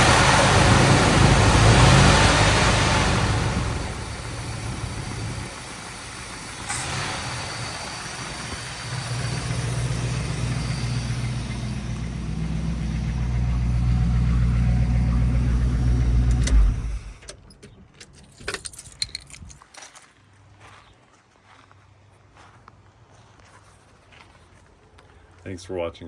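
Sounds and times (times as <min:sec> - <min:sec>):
engine running: 0:00.0 - 0:19.6
light clicks and rattles: 0:16.2 - 0:20.1.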